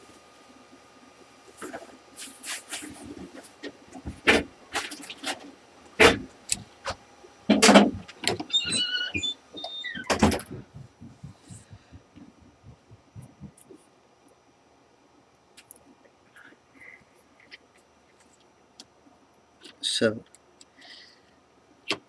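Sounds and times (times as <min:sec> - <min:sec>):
short squeak: 0:08.5 - 0:10.1.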